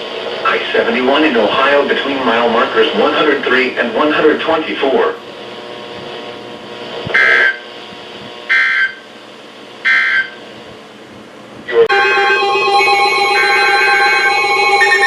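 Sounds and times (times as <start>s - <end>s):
electronic weather alert alarm: 7.1s - 7.6s, 8.5s - 9.1s, 9.8s - 10.4s, 11.7s - 15.0s
digital data burst screech: 7.2s - 7.6s.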